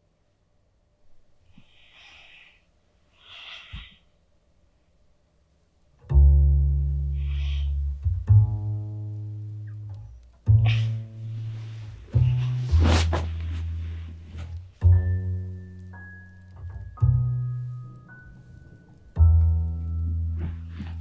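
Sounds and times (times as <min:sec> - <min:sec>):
faint breaths: 0:01.4 - 0:04.2
deep low string notes: 0:06.0 - 0:18.4, 0:19.1 - 0:21.0.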